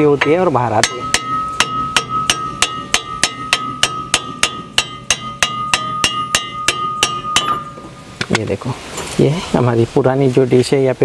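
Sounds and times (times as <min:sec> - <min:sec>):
hammer striking metal disc: 0:00.0 - 0:08.4
metallic ringing: 0:00.0 - 0:09.2.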